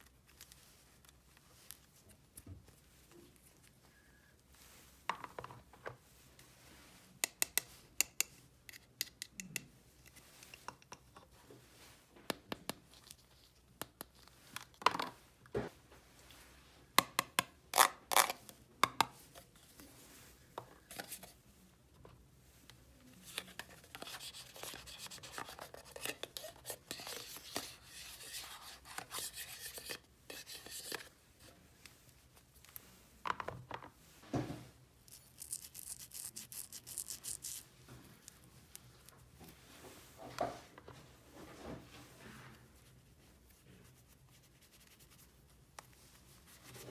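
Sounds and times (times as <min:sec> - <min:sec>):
scratchy rubbing and scraping: 0:23.2 - 0:31.2, 0:35.1 - 0:37.7.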